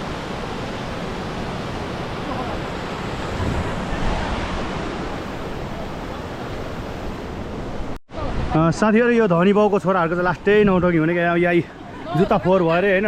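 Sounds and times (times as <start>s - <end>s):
stream water rushing: 0.0s - 10.4s.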